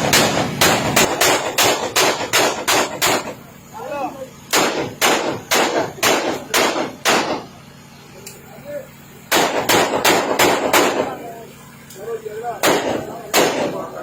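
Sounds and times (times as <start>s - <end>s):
gunshots with echo: 9.3s - 11.2s, 12.6s - 13.9s.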